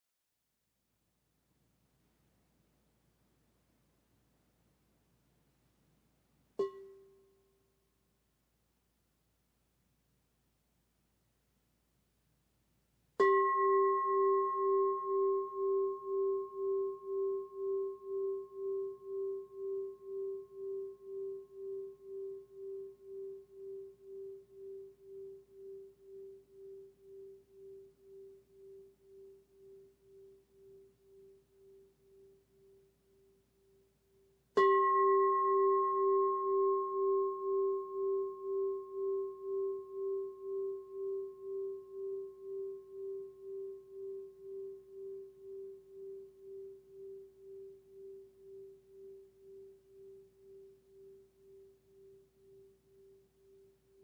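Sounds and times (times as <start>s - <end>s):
singing bowl ringing: 13.2s - 32.9s, 34.5s - 53.7s.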